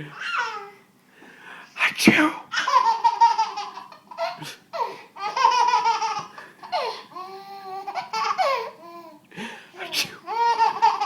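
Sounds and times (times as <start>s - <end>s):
baby laughing: 0.1s - 0.8s, 2.5s - 9.2s, 9.8s - 11.0s
baby squealing: 0.1s - 0.8s, 10.2s - 11.0s.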